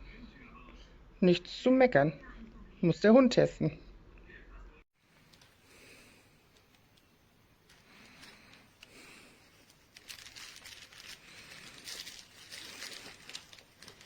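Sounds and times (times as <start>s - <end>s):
plush toy crinkle rustling: 5.0s - 14.0s.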